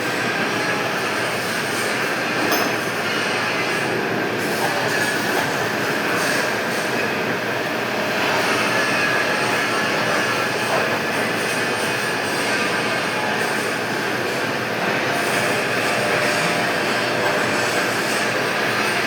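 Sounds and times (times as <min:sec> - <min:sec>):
machine shop noise: 0:00.0 - 0:19.0.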